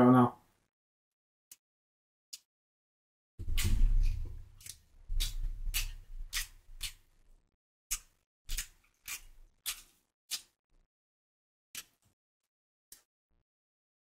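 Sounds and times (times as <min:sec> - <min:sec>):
crisp chewing: 0:03.4 - 0:07.2, 0:07.9 - 0:10.6.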